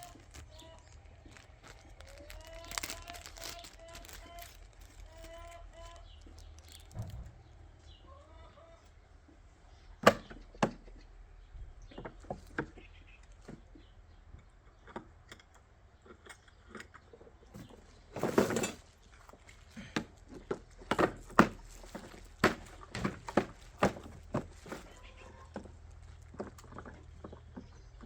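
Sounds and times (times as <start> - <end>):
parts clicking and knocking: 0.0 - 7.3
scraping rustle: 0.0 - 7.3, 17.6 - 19.9, 20.6 - 27.0.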